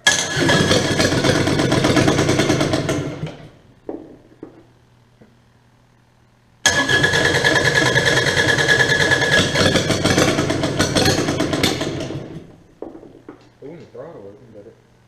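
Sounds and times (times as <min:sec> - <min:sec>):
diesel engine cranking: 0:00.0 - 0:03.6, 0:06.6 - 0:12.6
high starter whine: 0:00.0 - 0:03.6, 0:06.6 - 0:12.7.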